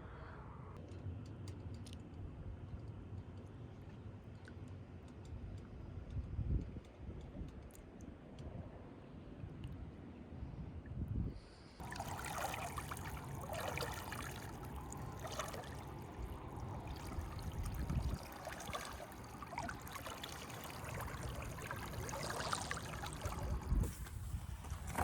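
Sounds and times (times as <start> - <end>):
water splashing and trickling: 11.8 - 25.0.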